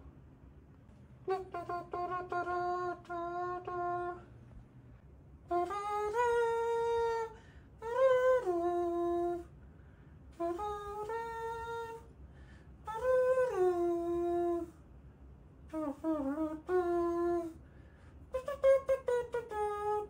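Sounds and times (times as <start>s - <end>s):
person humming a slow tune: 1.2s - 4.4s, 5.5s - 9.5s, 10.3s - 12.1s, 12.8s - 14.8s, 15.7s - 17.6s, 18.3s - 20.0s.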